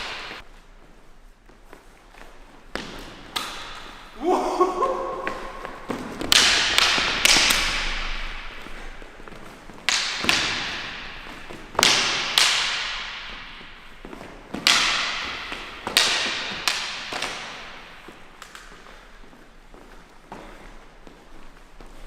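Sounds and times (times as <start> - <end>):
sword blades clashing: 6.2 - 8.8, 9.9 - 13.8, 14.5 - 17.9.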